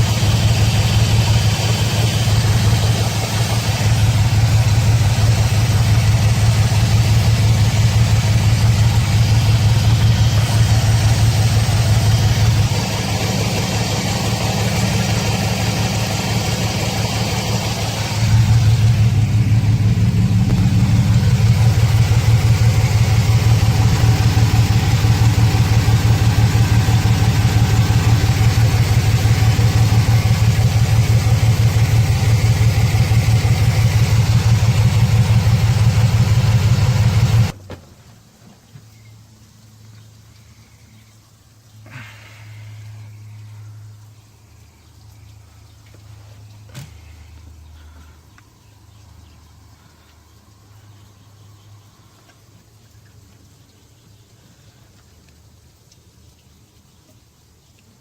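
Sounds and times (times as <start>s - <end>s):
car engine idling rough: 0.0s - 38.0s.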